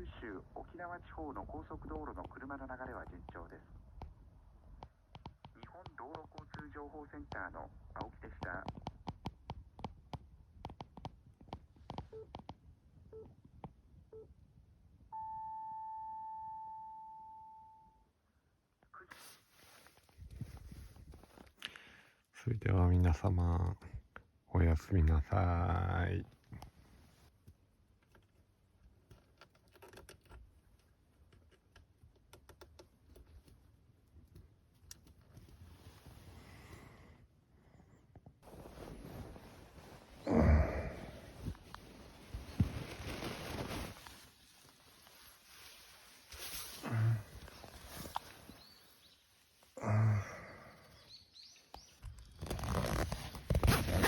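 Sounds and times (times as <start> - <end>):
long high tone: 15.2 - 18.0.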